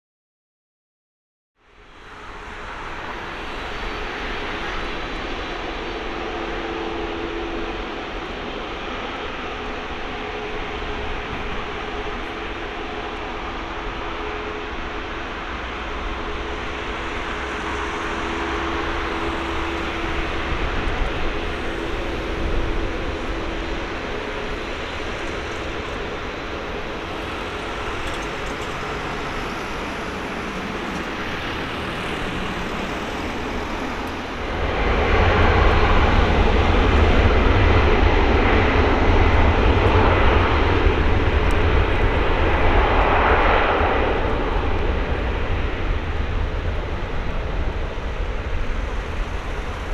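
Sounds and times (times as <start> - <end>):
jet engines running: 1.7 - 49.9
heavy deep rumble: 5.4 - 49.9.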